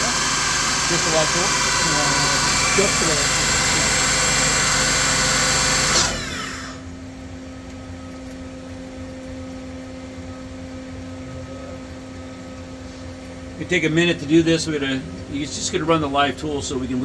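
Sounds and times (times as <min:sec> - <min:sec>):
lathe spindle spinning down: 0:00.0 - 0:06.9
machine humming at idle: 0:00.0 - 0:17.0.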